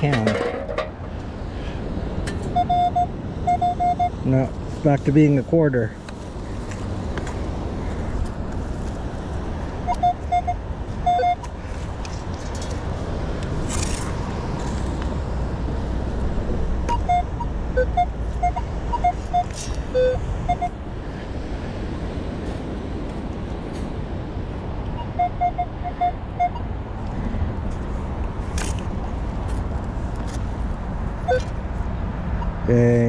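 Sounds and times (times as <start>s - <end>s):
metal detector beeping: 2.4s - 4.4s, 9.8s - 11.5s, 16.9s - 20.8s, 24.9s - 26.7s, 31.2s - 31.6s.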